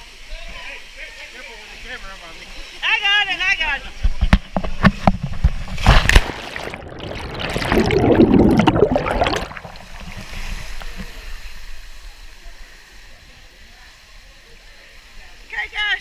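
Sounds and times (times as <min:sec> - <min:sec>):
water rushing and splashing: 0:01.5 - 0:12.2.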